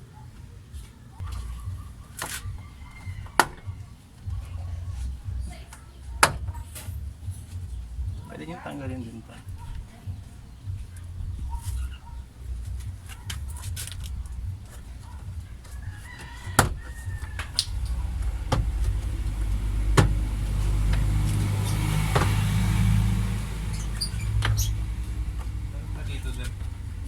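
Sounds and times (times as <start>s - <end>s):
low steady rumble: 1.2s - 27.0s
rooster crowing: 2.3s - 4.5s, 15.6s - 19.2s.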